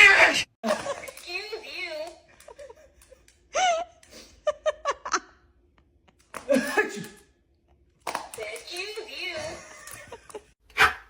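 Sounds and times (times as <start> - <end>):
person laughing: 2.4 - 5.4.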